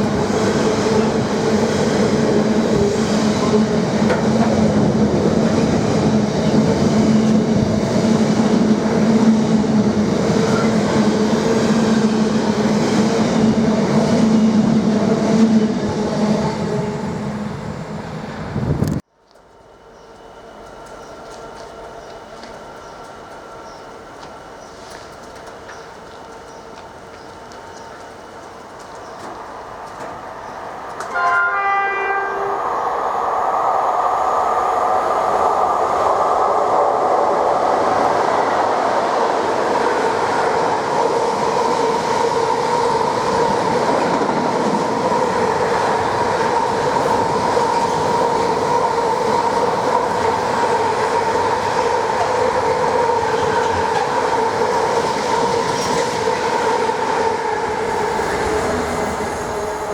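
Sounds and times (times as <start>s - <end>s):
train rumbling past: 0.0s - 59.9s
train horn blast: 31.0s - 32.6s.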